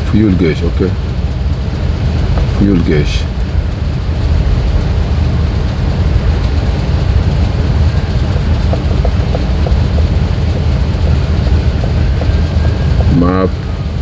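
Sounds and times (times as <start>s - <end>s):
car engine rumbling: 0.0s - 14.0s
faint clicks: 2.0s - 14.0s.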